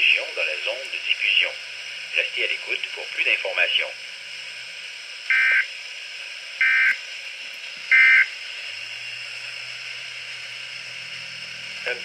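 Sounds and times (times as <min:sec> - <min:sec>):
radio hiss: 0:00.0 - 0:04.5, 0:11.6 - 0:12.0.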